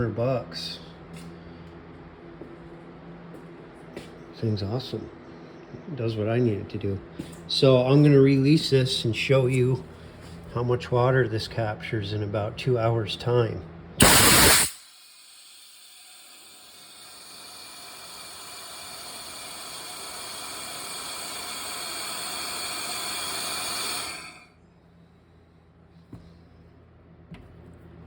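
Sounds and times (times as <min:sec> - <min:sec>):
compressed air hissing from valve: 0:14.0 - 0:24.4.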